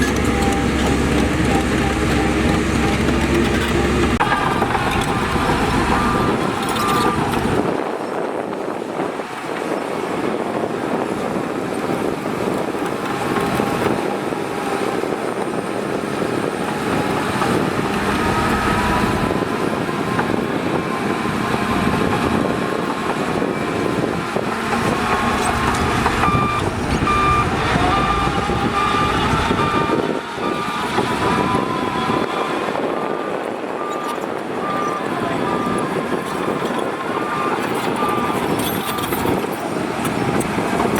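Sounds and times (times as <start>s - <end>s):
reversing alarm beeping: 0.0s - 7.6s, 18.1s - 39.4s
diesel earthmoving machinery: 0.0s - 40.9s.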